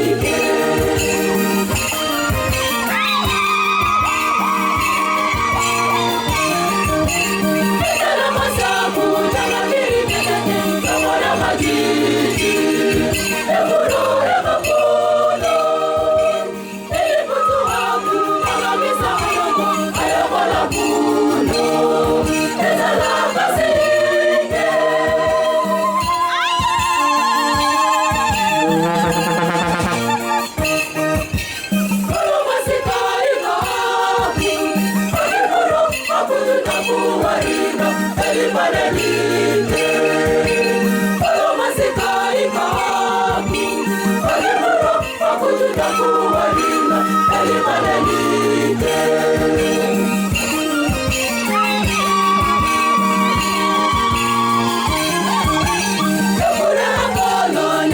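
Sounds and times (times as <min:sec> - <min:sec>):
choir singing a hymn: 0:00.0 - 0:02.8, 0:03.6 - 0:30.8, 0:31.9 - 0:57.9
steady percussion beat: 0:00.0 - 0:57.9.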